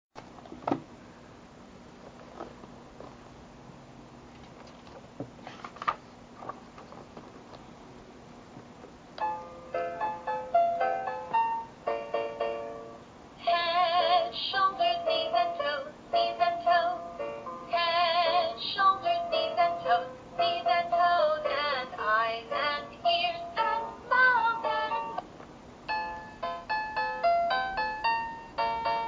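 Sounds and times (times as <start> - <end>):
keyboard-like melody: 9.2 - 13.0, 23.4 - 25.3, 25.9 - 29.0
person singing with vibrato: 13.4 - 25.2.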